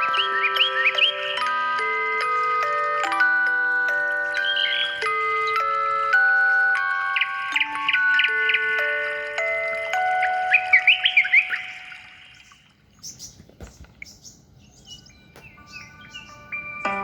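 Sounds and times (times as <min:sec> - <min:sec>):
bird-like chirps: 0:00.0 - 0:01.6, 0:04.2 - 0:17.0
ringing chime notes: 0:00.0 - 0:12.4, 0:15.1 - 0:17.0
high twittering chirps: 0:00.0 - 0:17.0.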